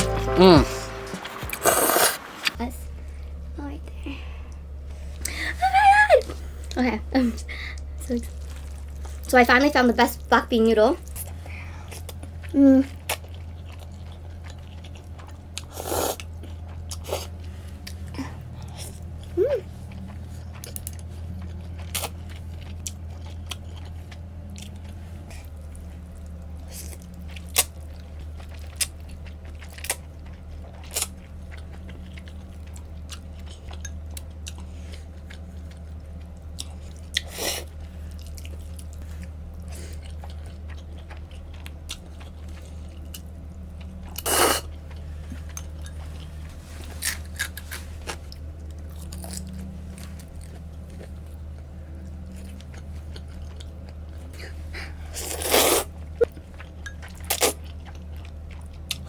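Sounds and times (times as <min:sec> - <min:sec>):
noisy bursts: 0:00.0 - 0:02.6
steady low hum: 0:00.0 - 0:59.0
chewing noodles: 0:07.8 - 0:10.3, 0:11.0 - 0:59.0.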